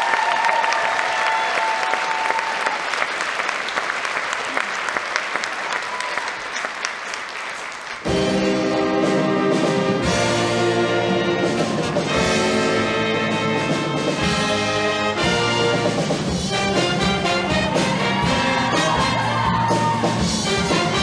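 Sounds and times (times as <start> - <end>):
band playing with brass: 8.0 - 21.0.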